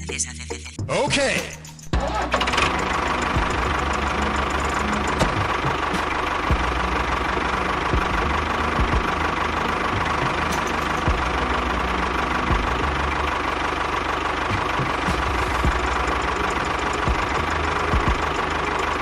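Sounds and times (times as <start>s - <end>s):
engine whine: 1.9s - 19.0s
small tractor engine running: 1.9s - 19.0s.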